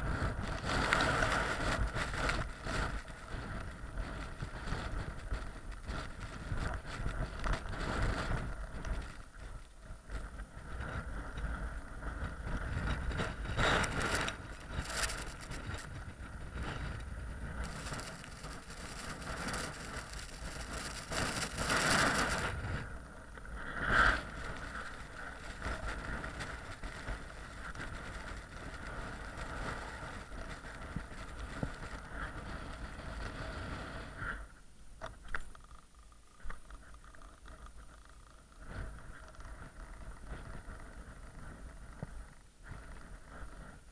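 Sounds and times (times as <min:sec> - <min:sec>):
blizzard wind buffeting microphone: 0:00.0 - 0:43.9.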